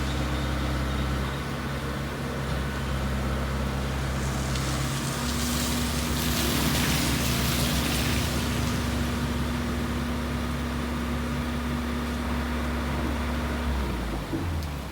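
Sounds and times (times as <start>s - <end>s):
heavy machinery diesel engine running: 0.0s - 14.9s
hiss: 3.9s - 9.3s.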